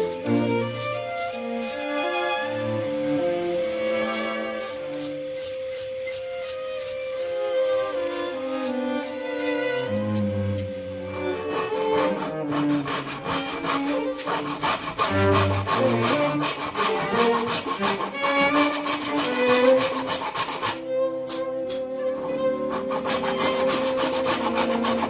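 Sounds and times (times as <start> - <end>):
hand tool rubbing on wood: 0.0 - 25.0
background music: 7.1 - 25.0.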